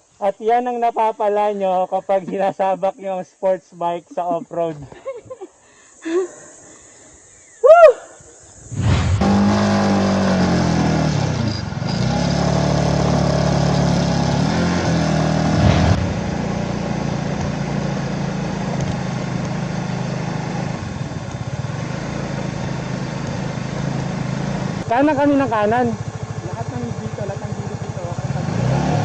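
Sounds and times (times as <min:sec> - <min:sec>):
motorcycle engine running: 0:09.2 - 0:29.0.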